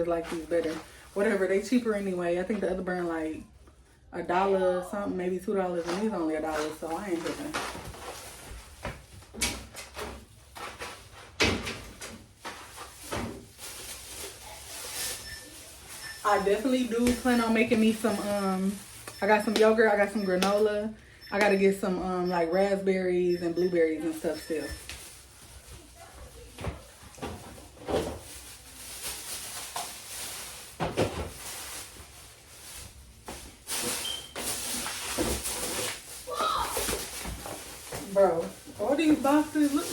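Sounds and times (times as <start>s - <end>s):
groceries knocking and clattering: 5.7s - 20.7s, 24.6s - 39.9s
packaging rustling: 12.3s - 19.2s, 27.6s - 39.9s.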